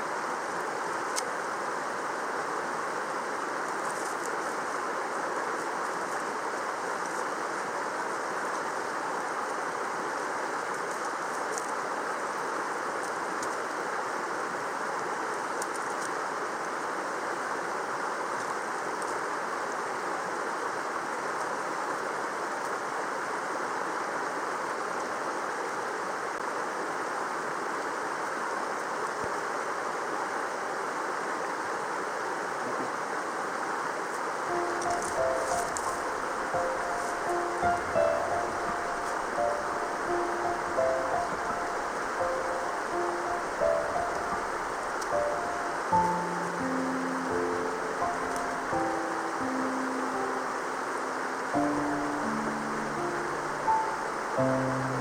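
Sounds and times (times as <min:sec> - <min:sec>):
stream water rushing: 0:16.2 - 0:55.0
faint ticks: 0:34.6 - 0:45.2.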